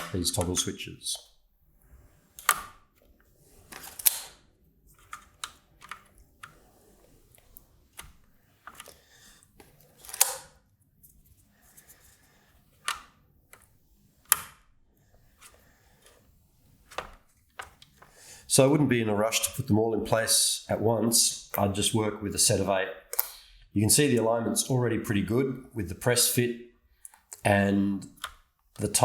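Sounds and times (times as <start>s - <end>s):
toggle switches clicking: 23.1s - 23.4s.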